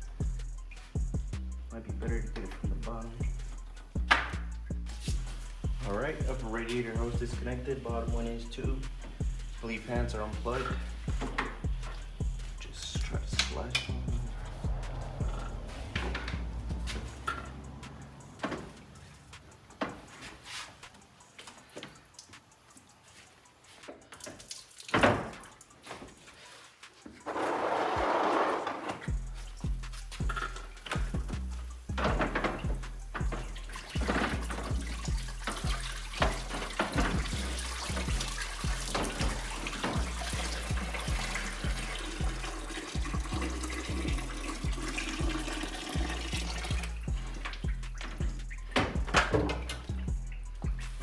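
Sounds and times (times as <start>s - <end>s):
liquid trickling and splashing: 2.2s - 51.0s.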